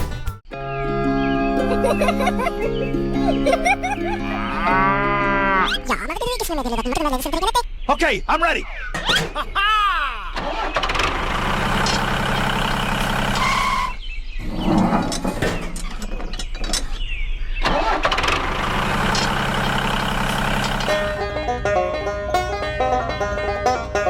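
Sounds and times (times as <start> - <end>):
small engine running: 10.4 - 14.0, 17.6 - 21.3.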